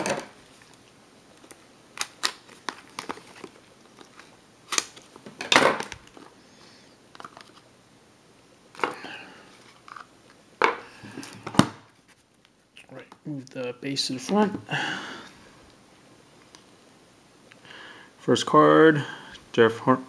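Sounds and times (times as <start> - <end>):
packaging rustling: 0.0 - 6.4, 7.1 - 7.6.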